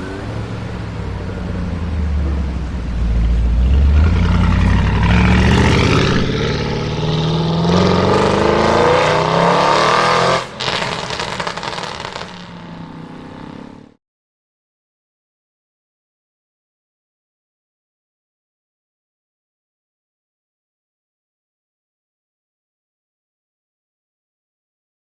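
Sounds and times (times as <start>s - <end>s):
car engine accelerating hard: 0.0s - 14.0s
exhaust crackles and pops: 10.4s - 12.6s.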